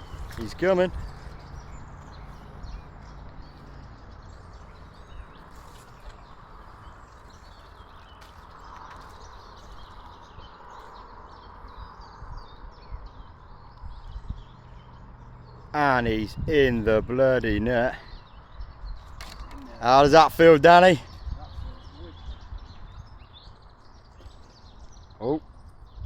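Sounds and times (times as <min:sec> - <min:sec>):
low outdoor rumble: 0:00.0 - 0:08.1
small birds chirping: 0:00.0 - 0:26.0.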